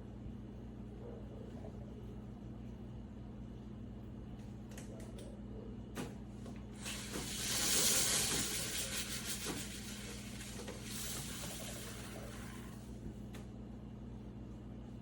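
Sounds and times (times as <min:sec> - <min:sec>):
espresso machine steam hissing: 0:06.8 - 0:13.0.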